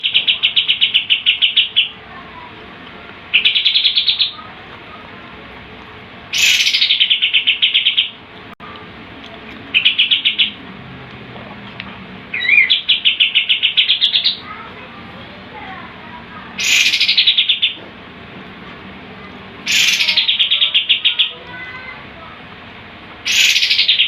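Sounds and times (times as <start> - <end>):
songbird fast trill: 6.3 - 8.2, 16.6 - 17.8, 19.7 - 21.4, 23.3 - 24.0.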